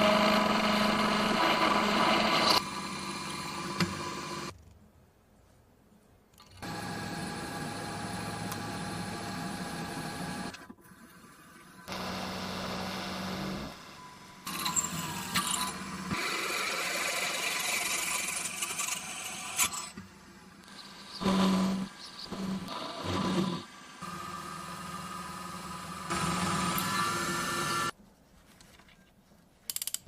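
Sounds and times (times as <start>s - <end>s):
rough metal cutting noise: 14.4s - 20.0s.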